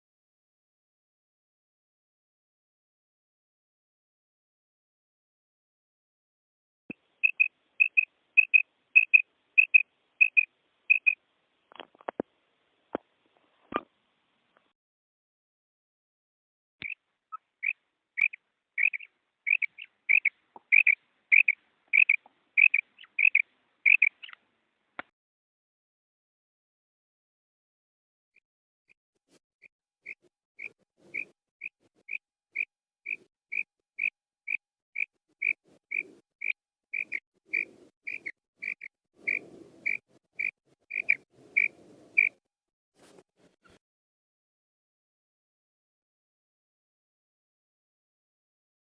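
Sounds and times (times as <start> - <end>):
quail calling high notes: 7.2 - 11.2, 17.6 - 24.4, 32.1 - 42.4.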